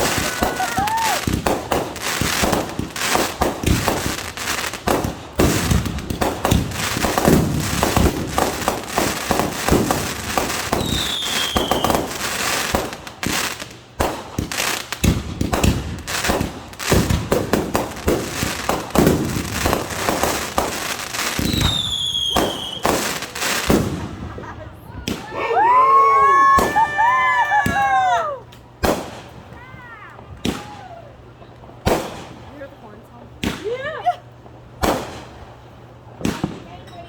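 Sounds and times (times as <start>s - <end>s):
falling firework whistle: 0.0s - 1.5s, 10.6s - 12.2s, 21.4s - 23.0s, 25.2s - 28.4s
fireworks bangs and crackling: 0.0s - 25.7s, 26.3s - 37.0s.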